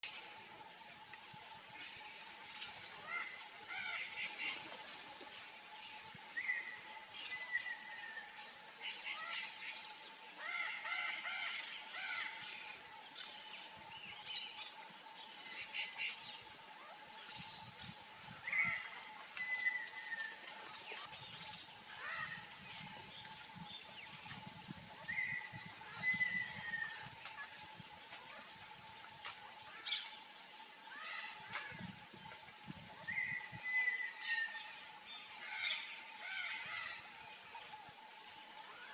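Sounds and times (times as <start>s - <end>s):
high-pitched insect drone: 0.0s - 38.9s.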